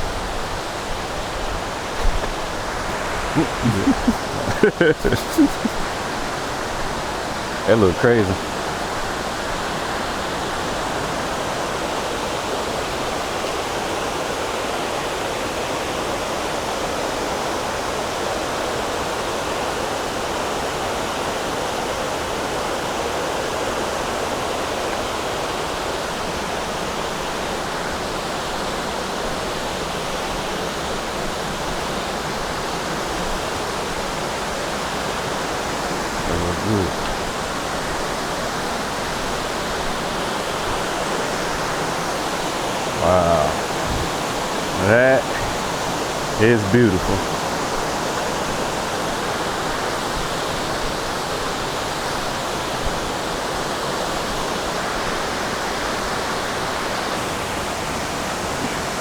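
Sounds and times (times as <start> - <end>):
waterfall rushing: 0.0 - 11.7, 40.1 - 49.0.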